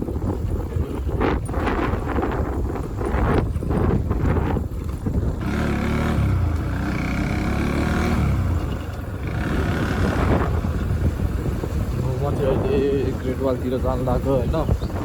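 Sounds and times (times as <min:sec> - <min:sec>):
wind buffeting microphone: 0:00.0 - 0:15.0
motorcycle engine running: 0:02.7 - 0:14.9
deeper passing engine: 0:05.4 - 0:14.3.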